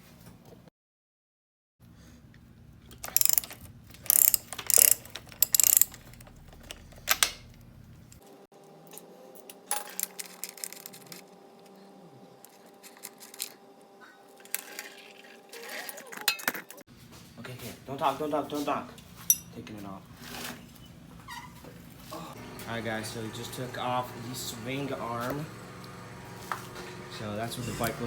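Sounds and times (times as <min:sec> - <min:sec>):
ratchet wrench clicking: 0:02.9 - 0:06.2
clicks of tools and metal parts: 0:02.9 - 0:08.2, 0:08.8 - 0:11.3, 0:12.4 - 0:13.6, 0:15.7 - 0:16.8.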